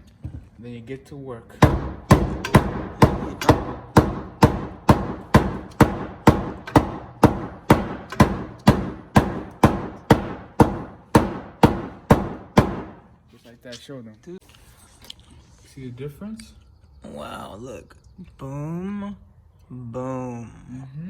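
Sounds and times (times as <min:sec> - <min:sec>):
mallet knocking on metal panel: 0:01.6 - 0:13.0.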